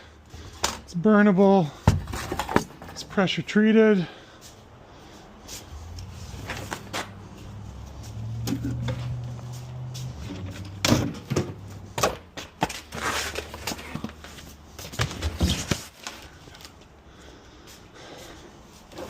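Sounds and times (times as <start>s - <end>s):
wood pieces knocking and thudding: 1.9s - 3.0s, 10.4s - 14.2s
wood scraping shuffle: 1.9s - 3.2s, 4.4s - 16.9s.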